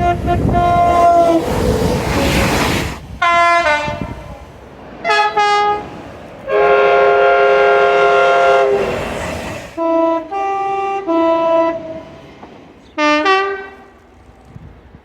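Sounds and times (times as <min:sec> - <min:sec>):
train horn blasts: 0:00.0 - 0:01.6, 0:03.2 - 0:04.4, 0:05.0 - 0:05.9, 0:06.5 - 0:09.0, 0:09.8 - 0:12.3, 0:13.0 - 0:14.1
train rumble: 0:00.0 - 0:15.0.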